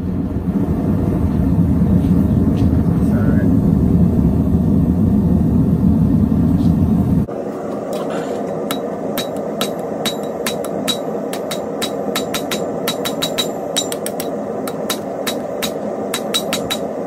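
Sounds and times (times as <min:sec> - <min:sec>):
steady background noise: 0:00.0 - 0:17.0
hammer striking metal on anvil: 0:08.0 - 0:17.0.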